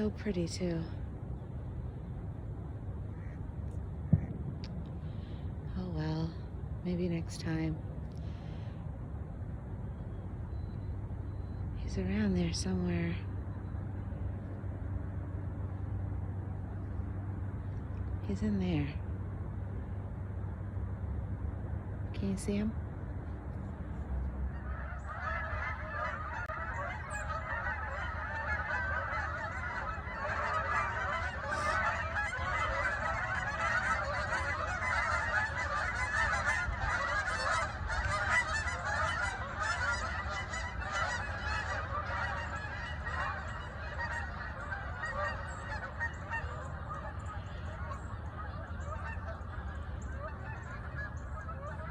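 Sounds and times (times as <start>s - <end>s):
geese honking: 3.1s - 4.3s, 23.6s - 51.9s.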